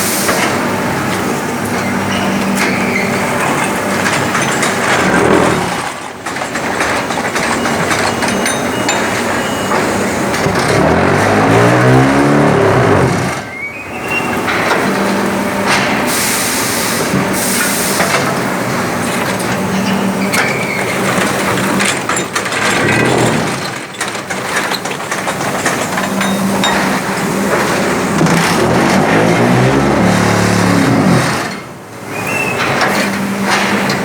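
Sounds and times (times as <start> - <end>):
block-making machine clatter: 0.0 - 34.0
machine hiss: 15.9 - 18.3.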